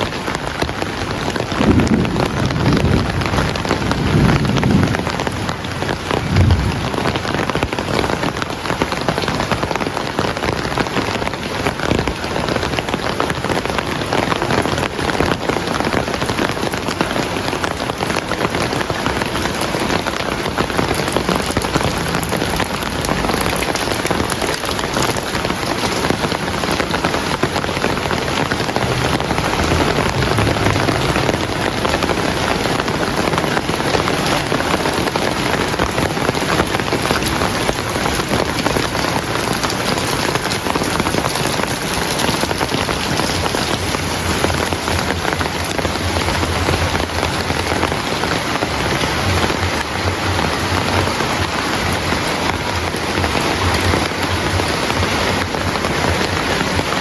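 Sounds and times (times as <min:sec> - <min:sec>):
heavy rain: 0:00.0 - 0:57.0
low thumps: 0:01.6 - 0:07.8.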